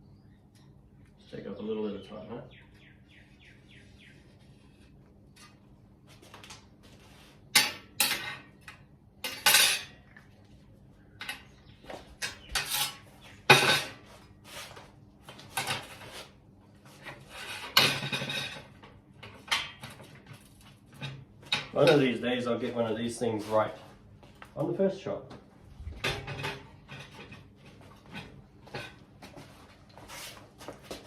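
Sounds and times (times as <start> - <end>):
steel parts clinking and scraping: 12.2 - 13.9.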